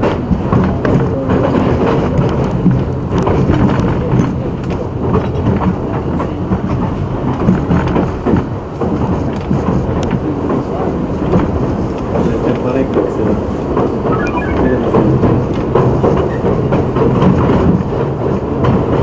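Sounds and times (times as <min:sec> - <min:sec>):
subway train rumbling: 0:00.0 - 0:12.9.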